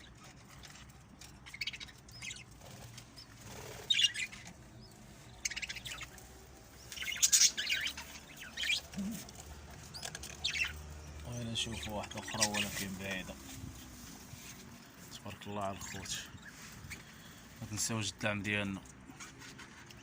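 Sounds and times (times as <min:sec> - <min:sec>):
wings fluttering: 0:00.0 - 0:11.0
small birds chirping: 0:00.0 - 0:20.0.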